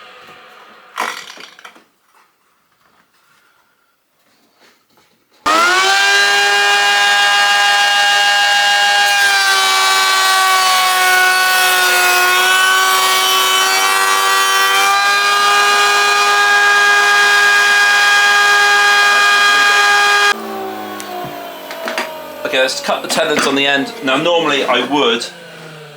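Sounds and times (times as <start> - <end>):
router cutting wood: 5.5 - 25.9.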